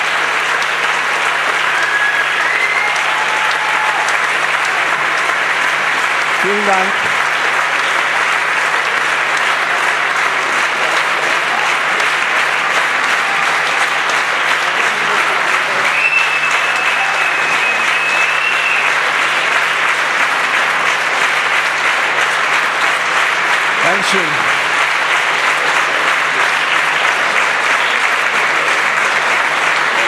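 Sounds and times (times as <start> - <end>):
audience applauding: 0.0 - 30.0.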